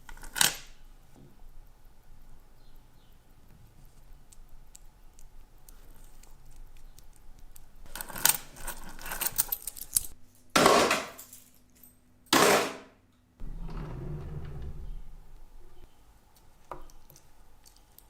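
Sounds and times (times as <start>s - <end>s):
small metal tools clinking: 7.9s - 10.2s.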